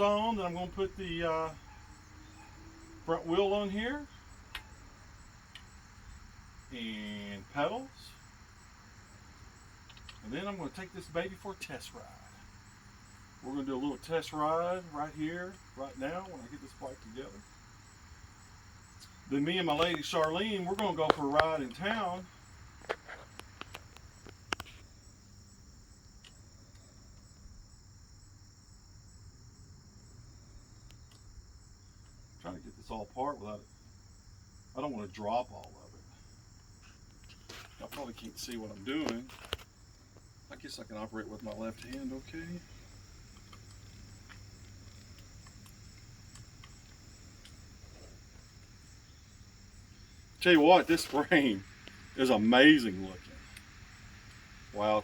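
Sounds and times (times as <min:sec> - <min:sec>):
crickets chirring: 0:00.0 - 0:55.0
faint clicks and taps: 0:22.8 - 0:24.8.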